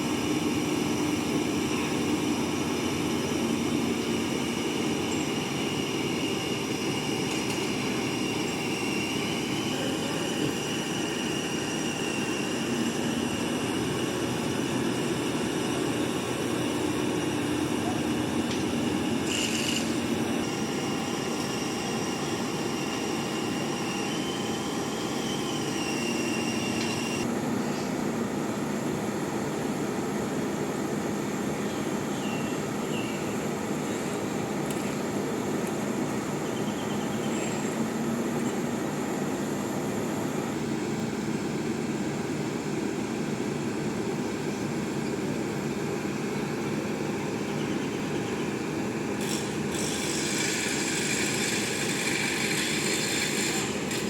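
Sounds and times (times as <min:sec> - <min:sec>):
heavy machinery running: 0:00.0 - 0:27.9, 0:37.1 - 0:54.0
faint high whine: 0:00.0 - 0:29.4.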